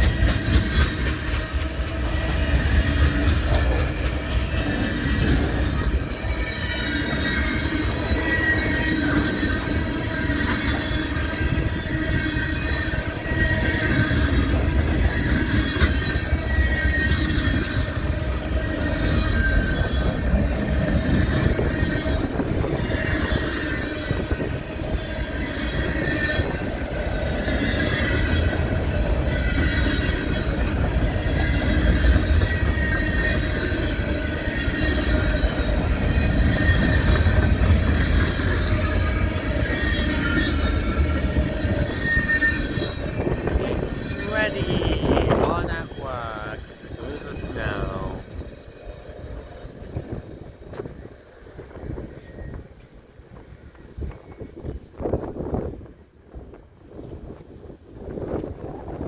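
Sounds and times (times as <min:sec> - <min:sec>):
train wheels squealing on rails: 0:00.0 - 0:45.4, 0:48.1 - 0:59.0
train cars rumbling: 0:00.0 - 0:56.0.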